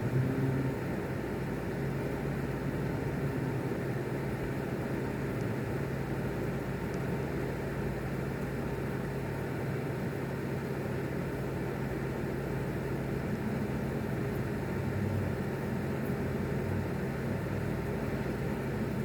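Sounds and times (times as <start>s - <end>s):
steady low hum: 0.0s - 8.2s.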